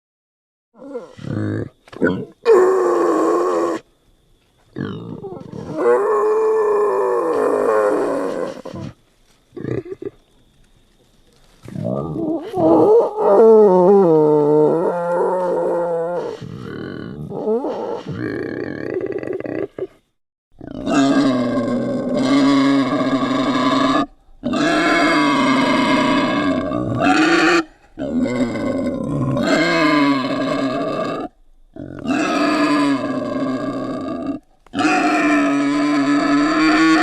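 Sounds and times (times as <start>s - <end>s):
wild boar calling: 4.7s - 9.0s, 11.6s - 20.0s, 20.6s - 37.0s.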